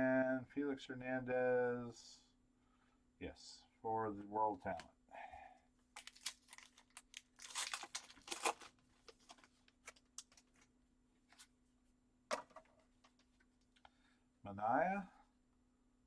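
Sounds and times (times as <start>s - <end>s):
wrapper tearing and crinkling: 6.0s - 10.6s.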